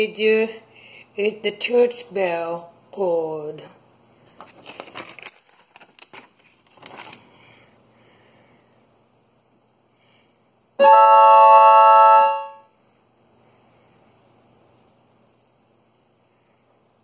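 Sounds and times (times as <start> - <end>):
electronic keyboard chord: 10.8 - 12.7.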